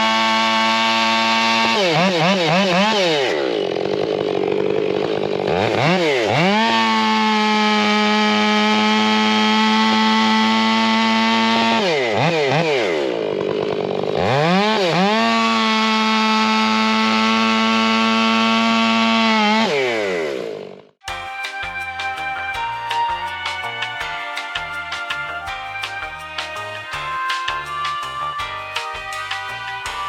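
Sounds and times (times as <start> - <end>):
chainsaw revving at full throttle: 0.0 - 21.0.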